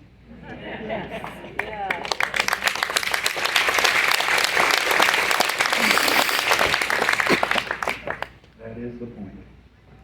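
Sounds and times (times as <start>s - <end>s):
audience laughing: 0.4s - 8.2s
audience applauding: 1.1s - 8.4s
audience cheering: 1.6s - 8.3s
person speaking: 5.8s - 6.7s.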